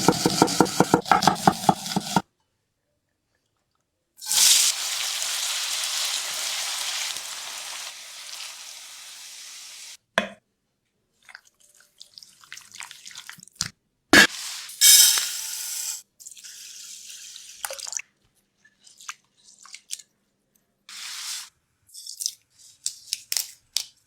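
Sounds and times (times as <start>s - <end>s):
food sizzling in hot oil: 4.2s - 10.0s, 14.2s - 17.6s, 20.9s - 21.5s.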